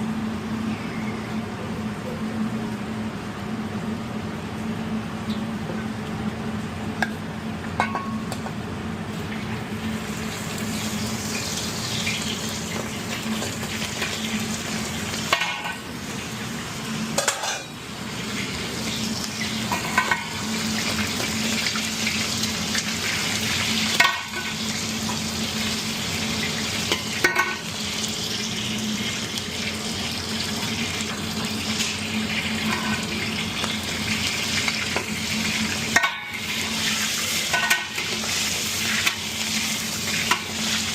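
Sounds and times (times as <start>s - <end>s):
food sizzling in a pan: 9.3s - 40.9s.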